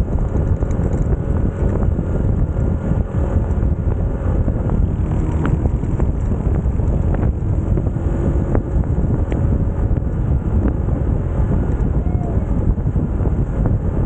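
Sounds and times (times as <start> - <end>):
motorcycle running: 0.0 - 14.0
wind noise on microphone: 0.0 - 14.0.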